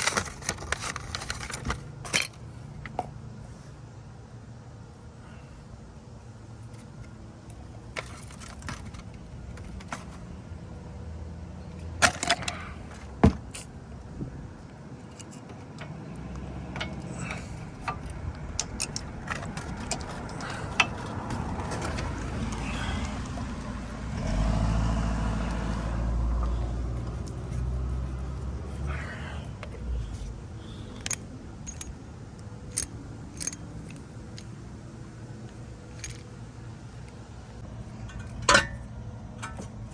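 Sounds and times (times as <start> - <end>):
tools clinking on metal brake parts: 0.0 - 3.1, 11.8 - 13.8, 16.7 - 23.2, 29.6 - 32.0, 32.7 - 34.6, 35.9 - 36.4, 37.9 - 39.9.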